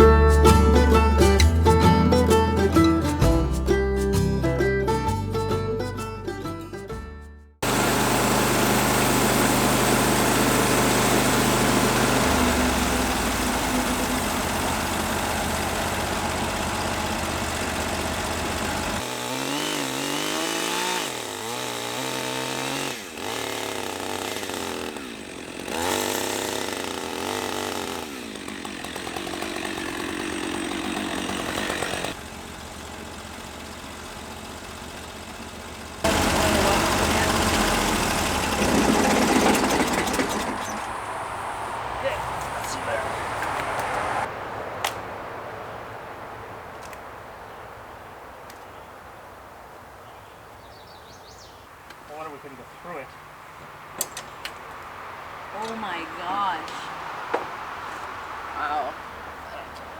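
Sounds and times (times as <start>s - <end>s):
band sawmill engine cutting log: 0.0s - 3.6s, 7.6s - 44.3s.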